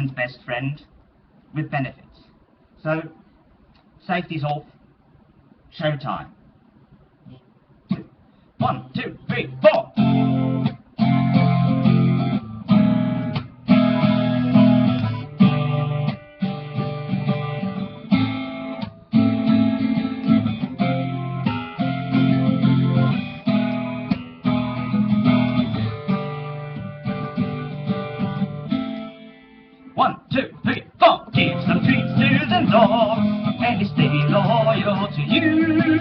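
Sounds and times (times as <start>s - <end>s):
guitar strumming chords: 7.9s - 36.0s.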